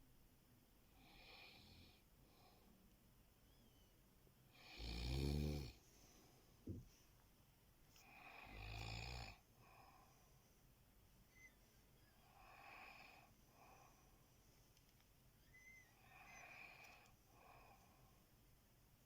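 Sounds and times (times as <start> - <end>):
faint breath: 7.9 - 14.8, 15.4 - 18.4.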